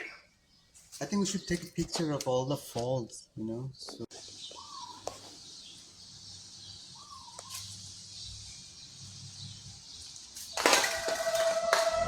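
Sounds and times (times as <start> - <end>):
steady high hiss: 4.3 - 10.5.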